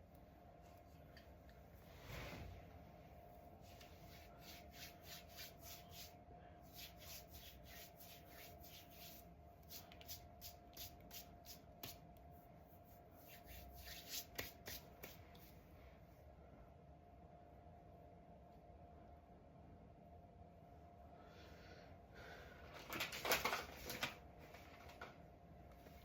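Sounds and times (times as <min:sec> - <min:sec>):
faint steady hum: 0:00.0 - 0:26.0
quick brushing strokes: 0:03.6 - 0:12.0, 0:12.7 - 0:15.6.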